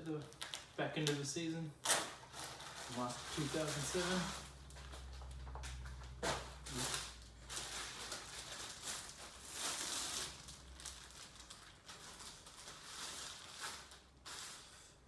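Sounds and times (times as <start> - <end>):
packaging rustling: 0.0 - 14.8.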